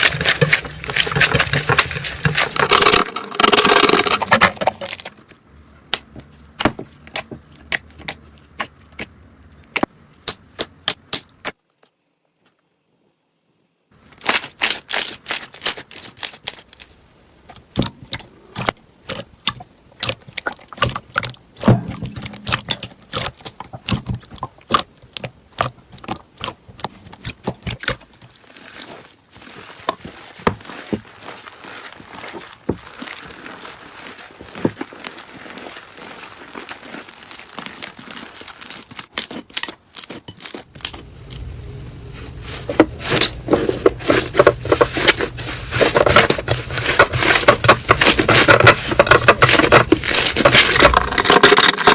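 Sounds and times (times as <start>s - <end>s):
slime popping and crackling: 19.1s - 51.9s.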